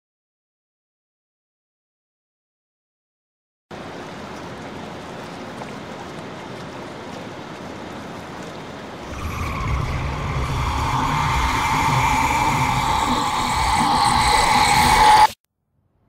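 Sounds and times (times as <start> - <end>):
low rumble: 9.0 - 15.3
steady rushing noise: 9.0 - 15.4
higher droning note: 9.1 - 15.4.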